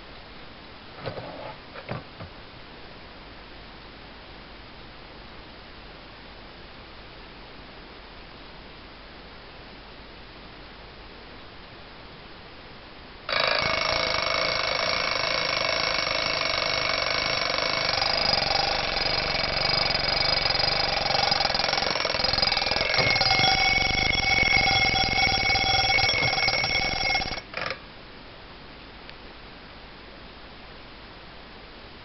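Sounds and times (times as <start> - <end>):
alarm clock bell ringing: 13.3 - 27.5.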